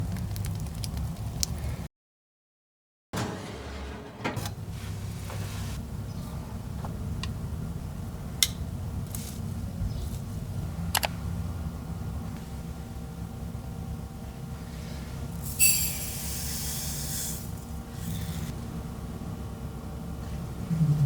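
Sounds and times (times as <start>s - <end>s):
steady low hum: 4.4s - 21.0s.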